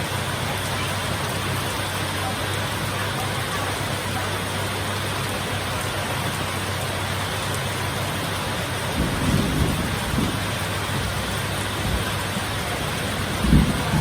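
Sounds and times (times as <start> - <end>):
heavy rain hissing: 0.0 - 14.0
low rumble of thunder: 8.9 - 14.0.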